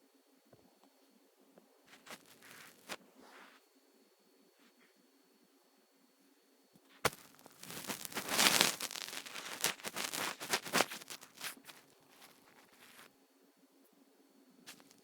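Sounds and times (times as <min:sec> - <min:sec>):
kitten scuffling rustling and clicks: 0:07.1 - 0:13.1, 0:14.7 - 0:15.0.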